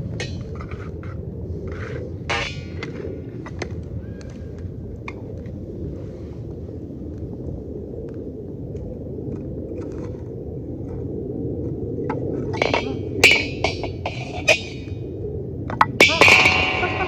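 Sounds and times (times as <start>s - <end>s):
fire crackles: 0.0s - 17.0s
wood fire burning: 0.0s - 17.0s
metal scraping and clinking: 2.3s - 2.9s, 12.5s - 15.0s, 16.0s - 17.0s.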